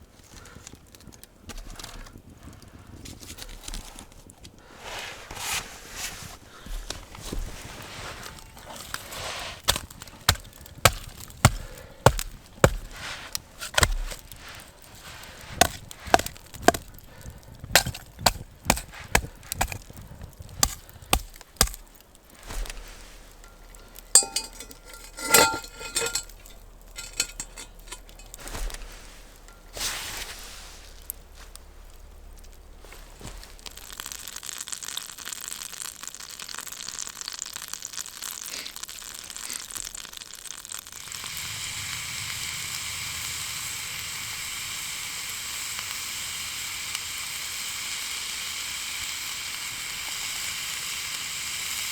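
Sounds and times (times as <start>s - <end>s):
blade chopping wood: 6.6s - 23.0s
metallic clinks: 23.5s - 28.4s.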